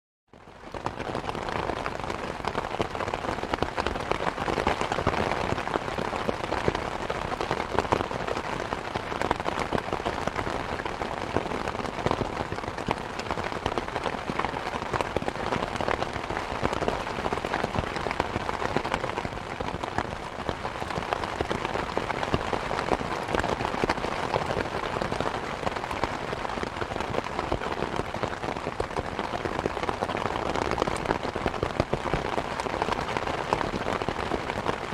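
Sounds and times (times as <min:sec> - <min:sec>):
rain pattering on a surface: 0:00.3 - 0:34.9.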